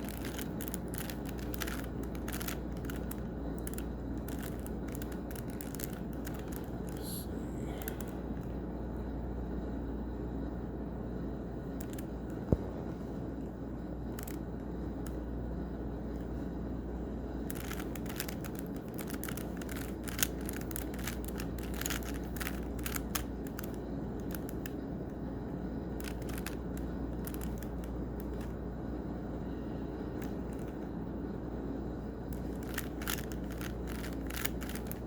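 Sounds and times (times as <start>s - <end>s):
puzzle cube plastic clicks: 0.0s - 7.1s, 7.7s - 8.5s, 17.4s - 24.9s, 25.9s - 28.6s, 30.1s - 30.8s, 32.3s - 35.0s
low room hum: 0.0s - 35.0s.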